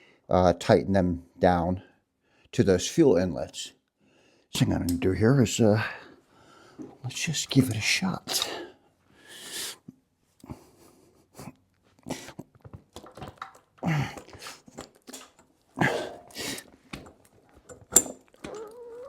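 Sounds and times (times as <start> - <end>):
clicks and knocks of parts: 12.6 - 18.8
man grunting and breathing hard: 13.8 - 14.4, 15.8 - 16.7.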